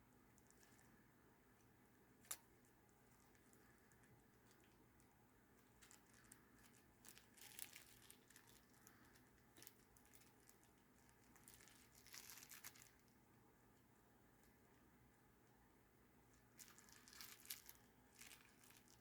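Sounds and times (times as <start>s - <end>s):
packaging rustling and crinkling: 5.6s - 13.1s, 16.6s - 19.0s.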